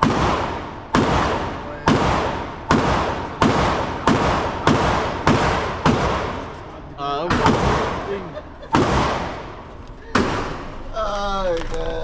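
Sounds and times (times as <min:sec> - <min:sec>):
echoing gunshots: 0:00.0 - 0:11.0.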